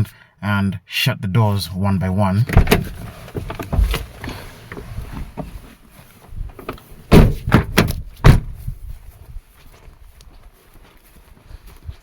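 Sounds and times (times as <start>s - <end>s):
car doors shutting: 2.5s - 5.5s, 6.6s - 8.6s.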